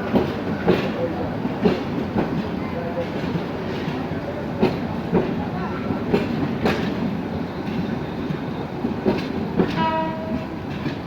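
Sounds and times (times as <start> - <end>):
train wheels clacking over rails: 0.0 - 11.0
train horn: 9.6 - 10.6.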